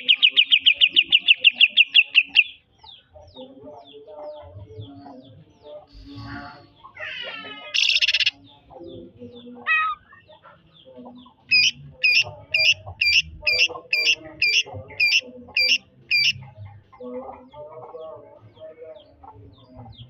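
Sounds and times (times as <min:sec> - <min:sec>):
chickens clucking: 0:00.0 - 0:20.0
bird singing sharp notes: 0:11.5 - 0:16.4.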